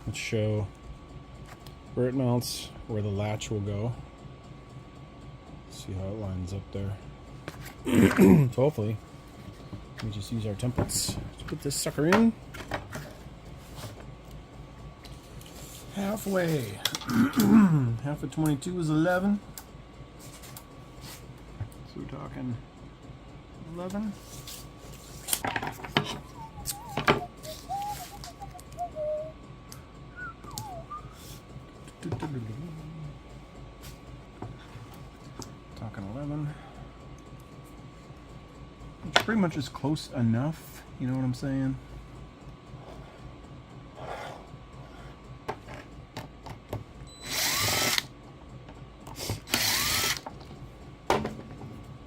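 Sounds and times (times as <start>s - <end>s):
faint wavering tone: 26.0s - 29.4s
power drill running: 47.2s - 48.1s, 49.2s - 50.3s.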